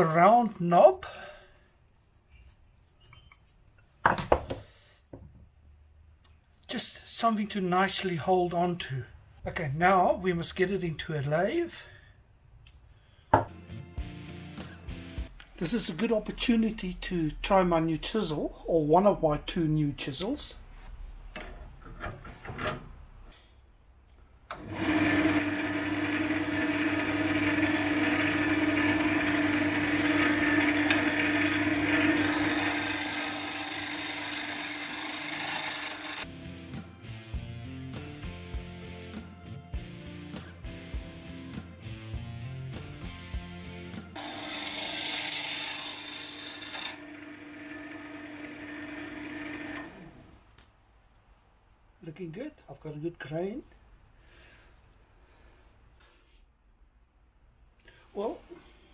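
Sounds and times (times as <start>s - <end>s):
wood lathe humming: 24.5s - 36.3s, 44.2s - 50.3s
chisel scraping spinning wood: 24.8s - 36.3s, 44.2s - 50.2s.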